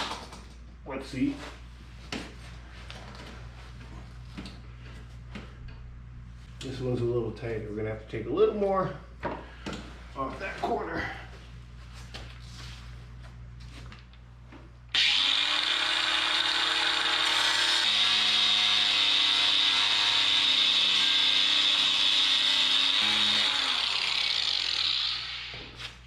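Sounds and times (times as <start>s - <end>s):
power tool cutting plastic: 14.9s - 25.7s.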